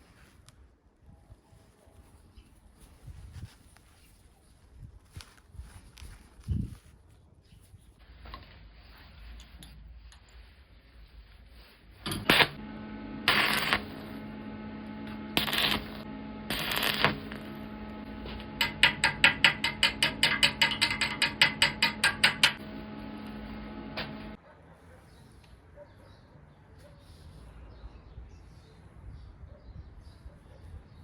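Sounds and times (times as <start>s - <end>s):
power tool motor running: 12.0s - 24.4s
tool biting metal: 13.2s - 24.4s.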